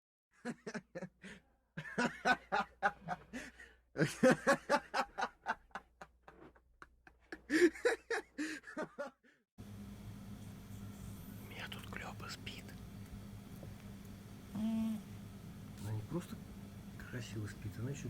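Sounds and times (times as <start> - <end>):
person snickering laughter: 0.4 - 9.2.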